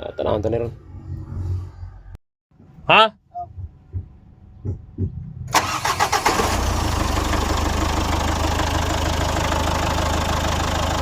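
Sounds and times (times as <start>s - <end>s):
diesel engine starting and idling: 5.4s - 11.0s.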